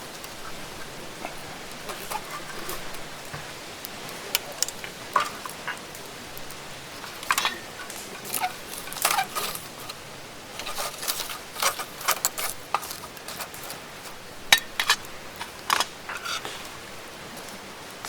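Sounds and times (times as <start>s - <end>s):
rain hiss: 0.0s - 18.0s
small hard objects clinking: 3.9s - 16.7s.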